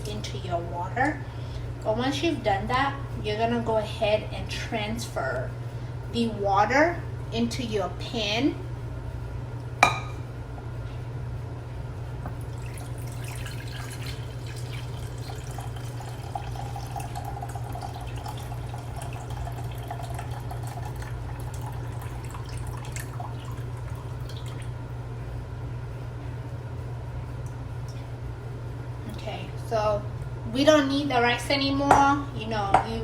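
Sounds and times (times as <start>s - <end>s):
steady low hum: 0.0s - 33.0s
water trickling into a pan: 12.3s - 24.8s.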